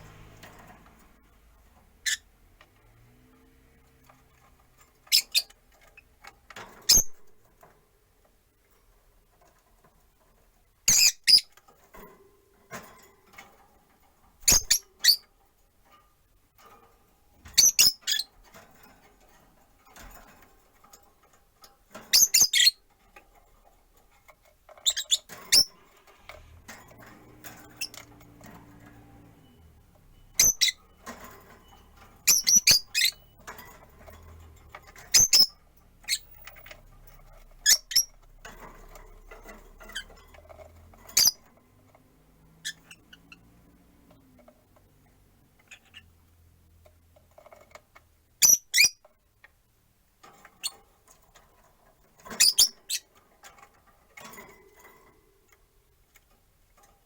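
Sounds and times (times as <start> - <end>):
lovebirds chirping: 27.6 - 33.6, 34.8 - 36.4, 39.9 - 41.5.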